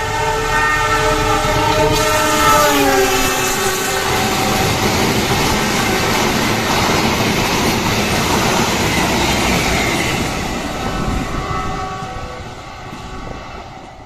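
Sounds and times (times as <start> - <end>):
train wheels rushing on rails: 0.0 - 14.0.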